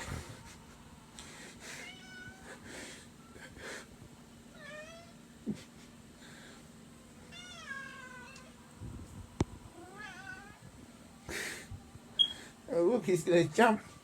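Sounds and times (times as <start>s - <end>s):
cat meowing: 7.3s - 8.5s, 9.8s - 10.6s.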